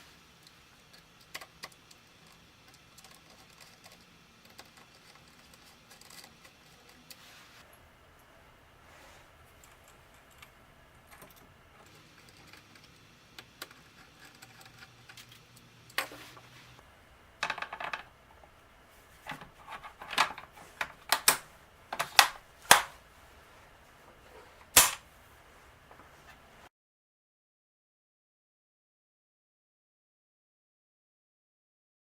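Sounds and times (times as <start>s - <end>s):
metal parts clicking: 19.2s - 23.0s, 24.7s - 25.0s.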